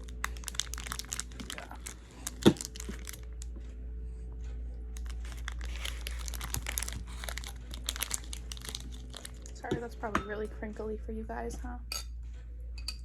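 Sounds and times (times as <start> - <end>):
wrapper crinkling: 0.0 - 3.7, 4.9 - 10.0.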